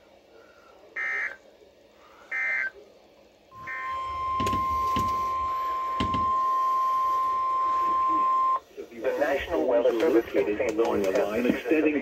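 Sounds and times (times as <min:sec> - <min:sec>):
weather radio alert tone: 0:02.3 - 0:02.7, 0:03.6 - 0:10.2
raspy digital chirps: 0:03.6 - 0:08.2.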